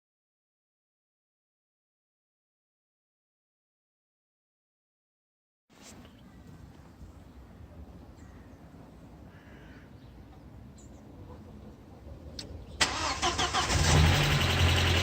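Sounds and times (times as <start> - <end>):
car engine starting: 12.8 - 15.0.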